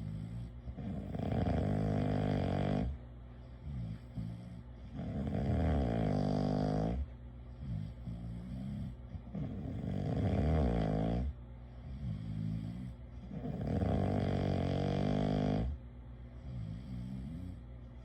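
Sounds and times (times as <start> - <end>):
soft wavering breathing: 0.0 - 0.9
person snoring loudly: 0.0 - 2.9, 5.0 - 7.0, 8.3 - 11.3, 12.0 - 15.8.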